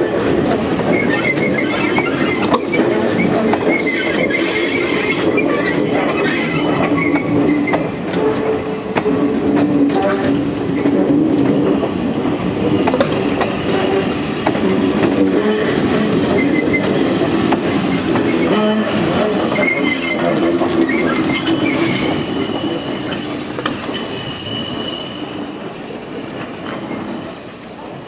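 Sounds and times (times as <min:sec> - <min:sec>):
train rolling with low hum: 0:00.0 - 0:28.0
high wheel squeal: 0:00.8 - 0:08.0, 0:17.7 - 0:25.4.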